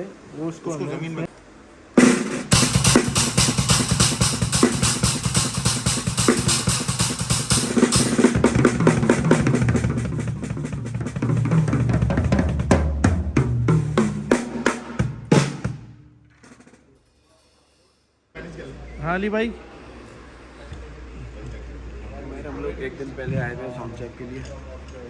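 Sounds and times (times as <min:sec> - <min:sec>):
drum kit playing: 0:02.0 - 0:16.8.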